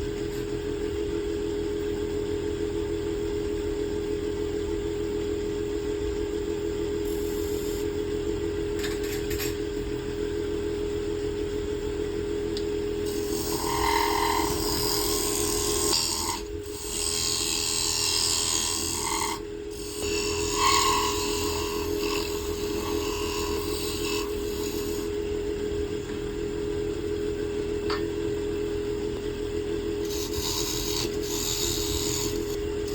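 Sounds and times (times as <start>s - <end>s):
tool hissing on spinning wood: 7.0s - 8.0s, 13.0s - 25.3s, 30.0s - 32.9s
wood lathe motor humming: 7.0s - 8.3s, 13.0s - 26.4s, 27.4s - 32.9s.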